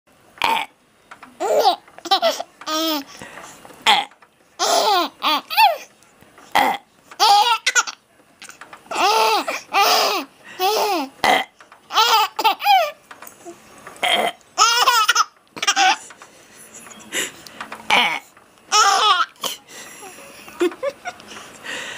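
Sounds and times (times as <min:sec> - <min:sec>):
person making burping sounds: 0:00.4 - 0:00.8, 0:03.8 - 0:04.2, 0:06.5 - 0:06.9, 0:11.2 - 0:11.6, 0:14.0 - 0:14.4, 0:17.9 - 0:18.3
baby laughing: 0:01.4 - 0:03.1, 0:04.6 - 0:05.9, 0:07.2 - 0:08.0, 0:08.9 - 0:11.1, 0:11.9 - 0:13.6, 0:14.6 - 0:16.0, 0:17.9 - 0:21.2.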